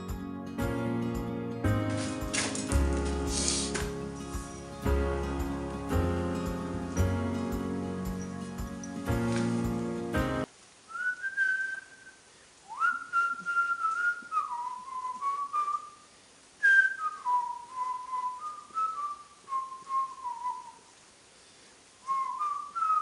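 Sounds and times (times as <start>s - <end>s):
person whistling a tune: 10.9s - 16.0s, 16.6s - 20.8s, 22.1s - 23.0s.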